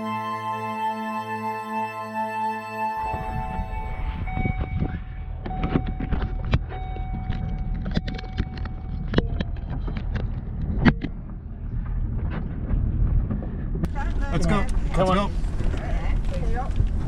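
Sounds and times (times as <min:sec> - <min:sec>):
road rumble: 0:03.0 - 0:17.0
sharp clicks and knocks: 0:05.4 - 0:13.9.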